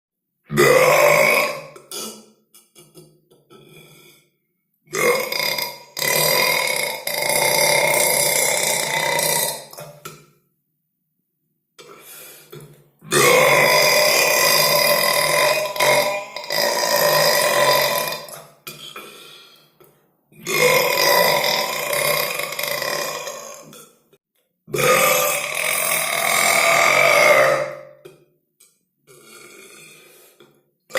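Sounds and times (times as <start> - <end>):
person belching: 0.5 - 4.2, 4.9 - 10.2, 11.8 - 19.3, 20.4 - 24.0, 24.7 - 28.1, 29.1 - 30.2.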